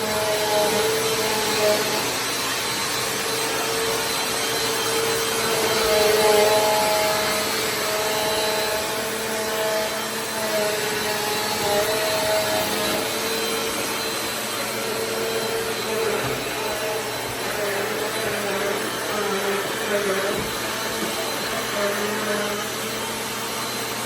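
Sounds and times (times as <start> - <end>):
vacuum cleaner running: 0.0 - 24.0.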